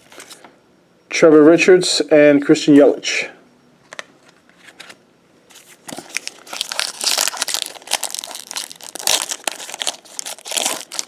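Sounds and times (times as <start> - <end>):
wrapper crumpled and torn: 5.6 - 11.0.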